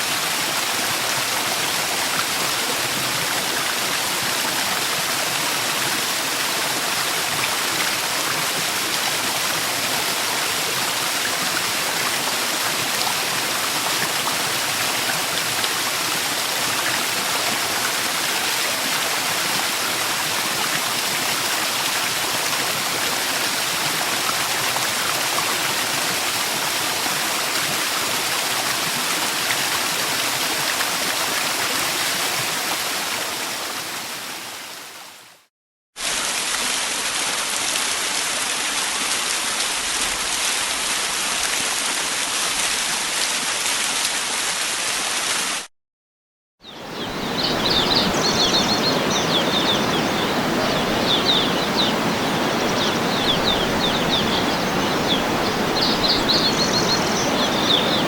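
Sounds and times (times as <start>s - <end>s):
waterfall rushing: 0.0s - 32.4s, 46.6s - 58.0s
small birds chirping: 46.6s - 58.0s.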